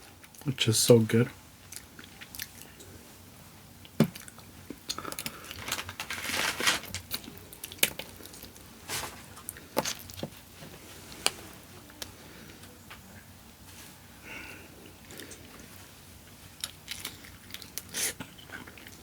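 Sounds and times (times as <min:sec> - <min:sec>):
biting and chewing: 0:01.7 - 0:03.0, 0:03.8 - 0:11.4, 0:16.4 - 0:19.0.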